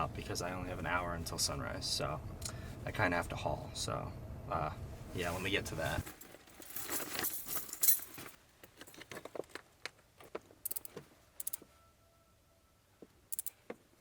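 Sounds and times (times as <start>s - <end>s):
rustling: 5.0s - 11.8s
metal chains jangling and clicking: 6.1s - 8.3s.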